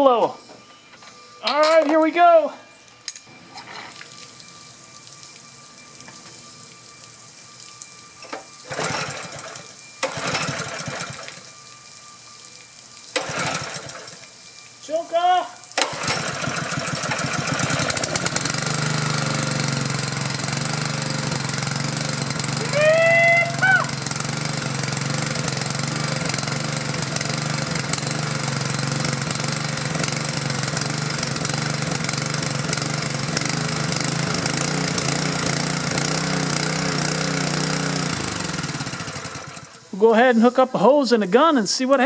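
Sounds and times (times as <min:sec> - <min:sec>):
pressure washer engine running: 0:03.9 - 0:41.3
short rising and falling call: 0:22.6 - 0:24.0.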